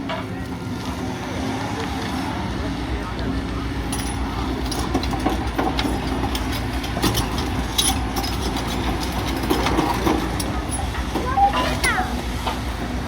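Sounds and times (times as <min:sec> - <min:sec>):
excavator diesel engine running: 0:00.0 - 0:13.0
metallic clicks and clanks: 0:03.9 - 0:12.7.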